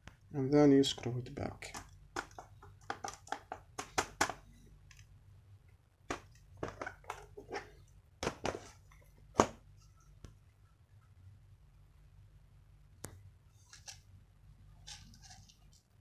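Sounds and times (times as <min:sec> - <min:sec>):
plastic clicks and knocks: 0:01.0 - 0:05.0, 0:06.1 - 0:07.6.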